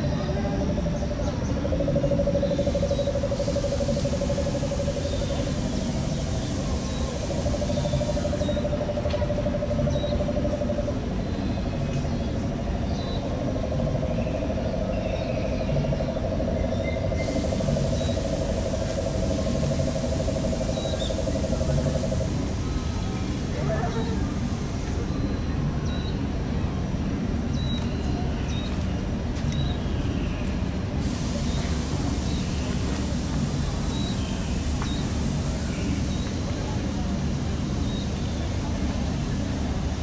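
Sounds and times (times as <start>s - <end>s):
low outdoor rumble: 0.0s - 40.0s
high insect-like hiss: 2.5s - 8.8s, 17.2s - 25.0s.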